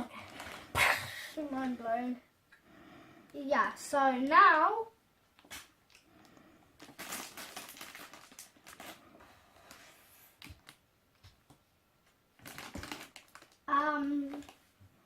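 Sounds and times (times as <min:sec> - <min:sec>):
bags rustling: 0:06.8 - 0:09.1, 0:12.4 - 0:13.6.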